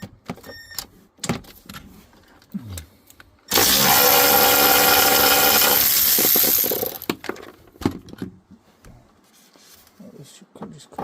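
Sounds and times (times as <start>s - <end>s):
parts clicking and knocking: 3.1s - 8.3s
small electric motor running: 3.5s - 7.1s.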